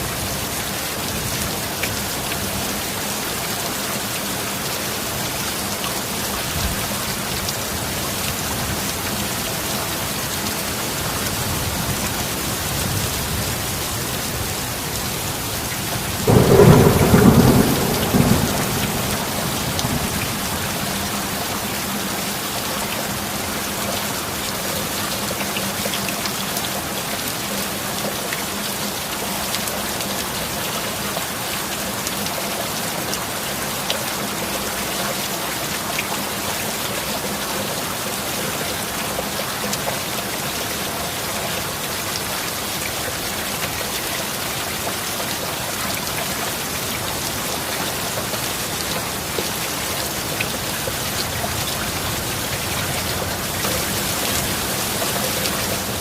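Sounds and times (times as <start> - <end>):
heavy rain: 0.0 - 56.0
thunder rumbling: 15.9 - 21.8.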